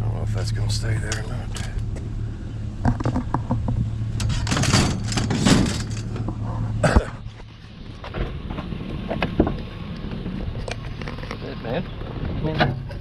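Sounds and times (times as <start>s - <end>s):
truck engine idling: 0.0s - 13.0s
scrap metal clanking and scraping: 2.8s - 9.6s
door shutting bang: 4.2s - 6.0s.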